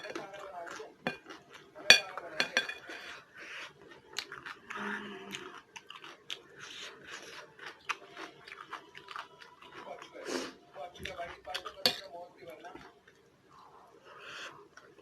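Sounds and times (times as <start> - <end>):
crunchy chewing: 0.0 - 2.1, 2.8 - 12.1
spoon clinking against dish: 1.0 - 2.9.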